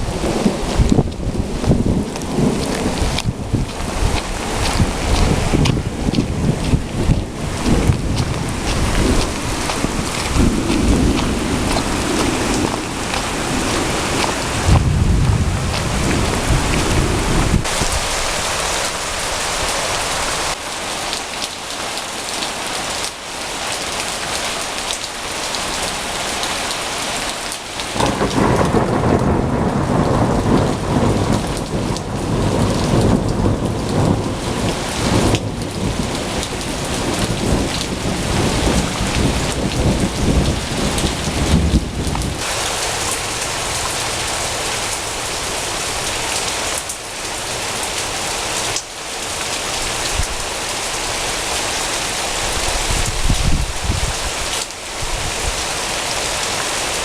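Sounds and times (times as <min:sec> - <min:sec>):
thunder rumbling: 0:00.0 - 0:18.8, 0:28.0 - 0:42.5
heavy rain pouring: 0:00.0 - 0:57.0.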